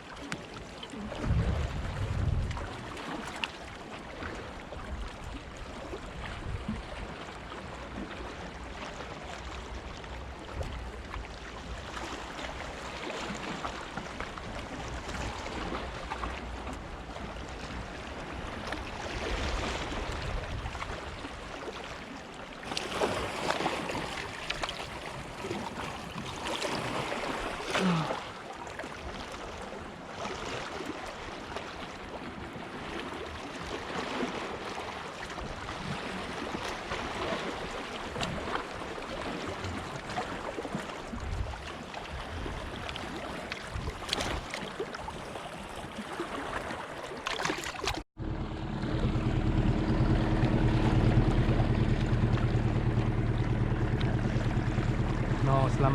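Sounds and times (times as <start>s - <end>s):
wind on microphone: 1.1s - 3.0s, 18.5s - 21.2s, 41.1s - 42.8s, 43.6s - 44.5s
sea waves washing against rocks: 11.6s - 28.7s, 49.2s - 55.9s.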